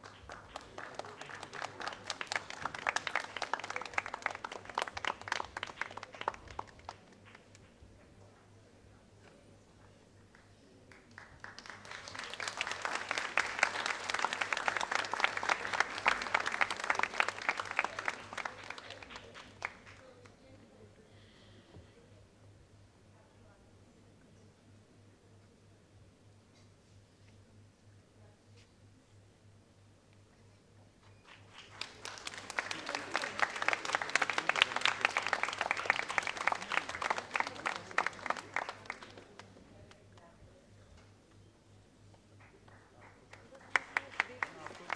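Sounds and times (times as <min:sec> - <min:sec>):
audience applauding: 0:00.0 - 0:07.8, 0:10.9 - 0:20.0, 0:31.2 - 0:39.6, 0:42.4 - 0:44.9
children clapping: 0:00.0 - 0:07.8, 0:10.9 - 0:20.1, 0:31.3 - 0:39.6, 0:42.4 - 0:44.9.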